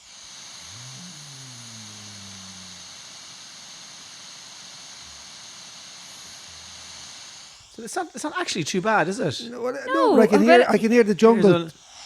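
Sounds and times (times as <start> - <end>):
recording hiss: 0.0 - 12.0
man snoring: 0.4 - 7.5.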